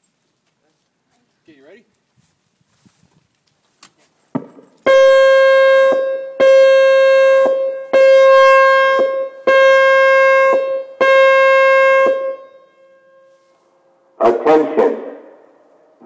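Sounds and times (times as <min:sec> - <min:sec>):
warning siren steady tones: 0:04.8 - 0:16.0.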